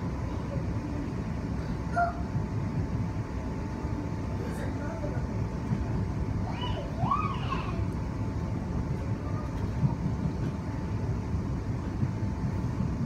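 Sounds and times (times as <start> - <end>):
train wheels rumbling on track: 5.2 - 13.0.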